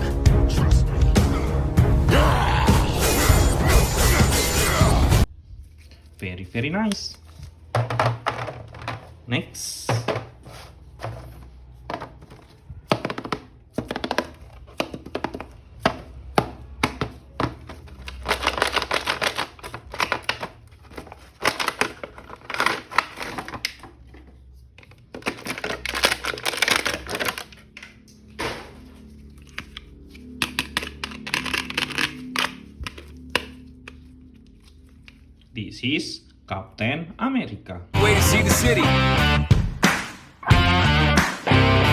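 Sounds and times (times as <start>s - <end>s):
plastic packaging clicking: 12.0s - 24.1s, 24.8s - 28.1s, 29.4s - 35.3s
packaging crinkling: 17.0s - 27.8s, 29.0s - 35.4s.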